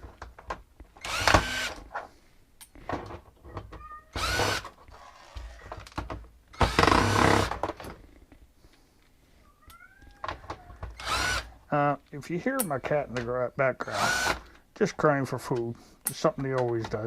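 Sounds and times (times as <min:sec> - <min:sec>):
clicks and handling noise: 0:00.0 - 0:01.0, 0:04.6 - 0:06.4, 0:12.0 - 0:13.5, 0:14.4 - 0:17.0
power drill whining: 0:01.0 - 0:01.8, 0:04.1 - 0:05.6, 0:06.5 - 0:07.6, 0:10.9 - 0:11.5, 0:13.9 - 0:14.5.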